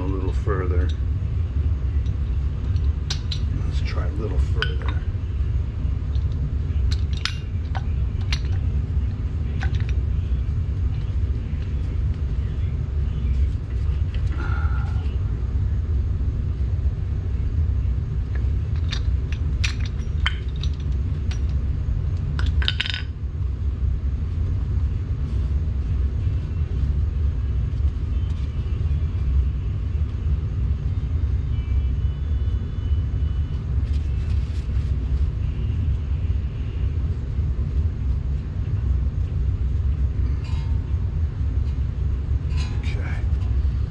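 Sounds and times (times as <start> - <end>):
steady low rumble: 0.0 - 43.9.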